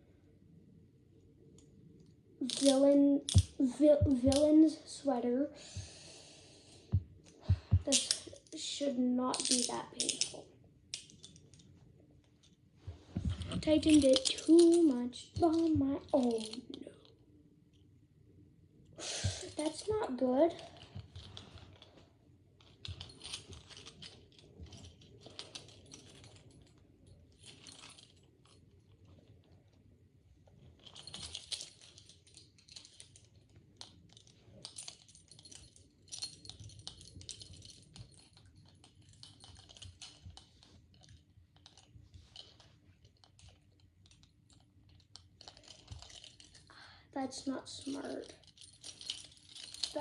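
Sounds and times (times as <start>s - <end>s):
metal handcuffs clinking: 2.4s - 4.6s, 7.2s - 8.6s, 9.3s - 11.7s, 13.2s - 17.2s, 19.3s - 21.9s, 22.6s - 29.1s, 30.8s - 46.7s, 47.4s - 50.0s.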